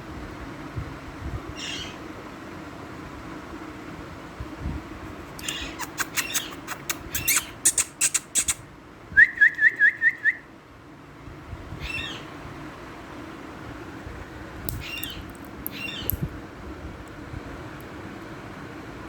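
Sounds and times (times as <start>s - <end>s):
parrot shrieking: 1.6s - 2.0s, 5.4s - 8.6s, 11.8s - 12.3s, 14.8s - 16.1s.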